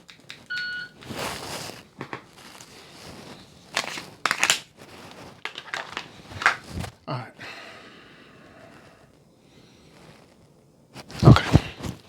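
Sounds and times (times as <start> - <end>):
shot timer start beep: 0.5 - 1.0.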